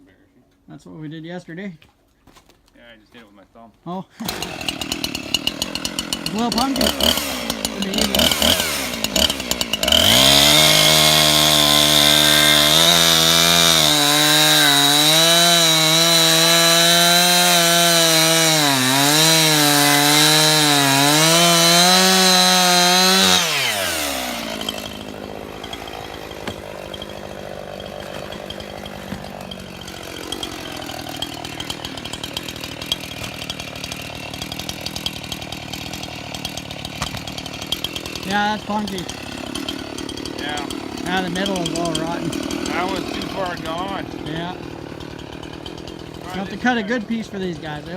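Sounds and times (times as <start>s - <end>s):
chainsaw idling: 4.1s - 47.9s
chainsaw cutting log: 4.2s - 47.9s.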